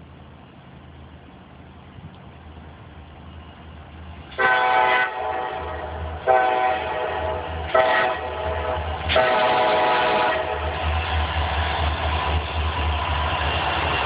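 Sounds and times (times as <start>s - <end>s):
locomotive engine rumble: 0.0s - 14.0s
locomotive horn blasts: 4.4s - 10.8s.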